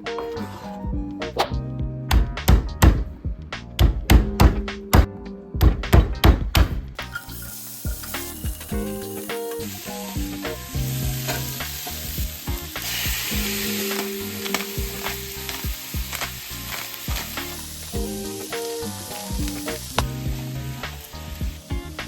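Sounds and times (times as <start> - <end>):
slow low background tune: 0.0 - 22.0
food sizzling in a pan: 7.2 - 22.0.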